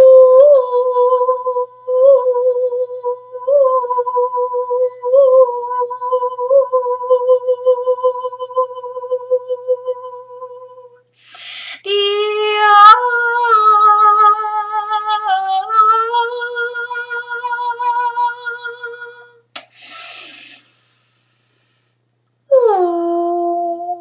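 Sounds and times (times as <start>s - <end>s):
in-breath: 11.1s - 11.9s, 19.6s - 22.0s
woman toning long vowels: 22.5s - 24.0s.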